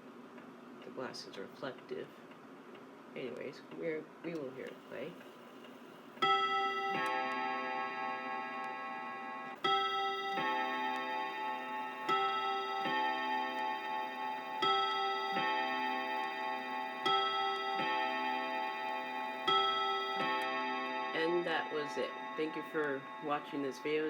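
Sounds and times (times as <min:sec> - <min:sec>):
wall clock striking gong rods: 0:06.2 - 0:24.0.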